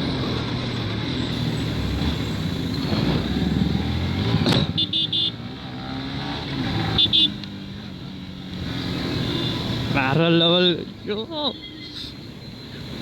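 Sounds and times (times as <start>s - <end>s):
wind noise on microphone: 1.3s - 4.8s
motorcycle engine running: 1.3s - 5.3s.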